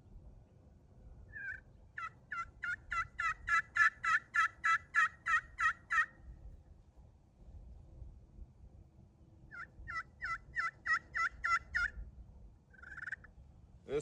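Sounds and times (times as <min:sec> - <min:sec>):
turkey pot call yelps: 0:01.3 - 0:06.2, 0:09.5 - 0:12.0, 0:12.7 - 0:13.3.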